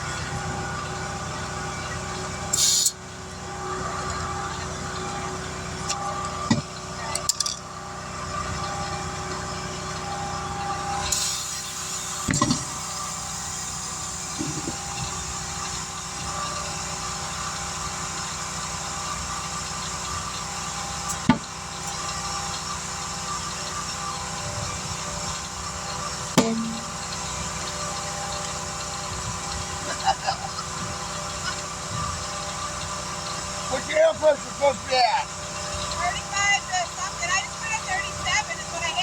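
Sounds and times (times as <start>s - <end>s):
engine idling: 0.0s - 39.0s
sharp knocks of tool work: 26.4s - 27.1s.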